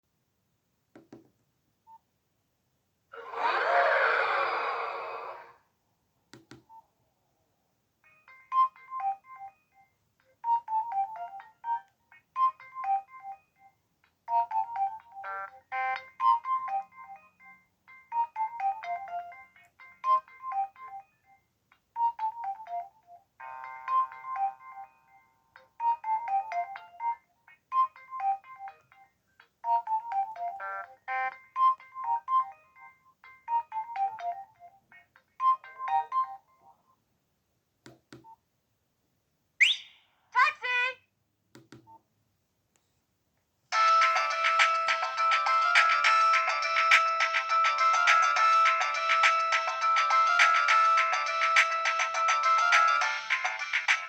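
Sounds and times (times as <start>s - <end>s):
phone ringtone melody: 8.2s - 21.4s, 22.0s - 36.8s, 43.7s - 54.0s.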